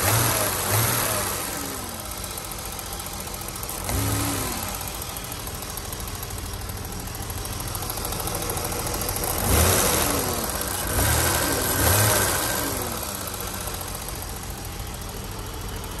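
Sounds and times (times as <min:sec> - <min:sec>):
car engine idling: 0:00.0 - 0:16.0
engine revving: 0:00.0 - 0:16.0.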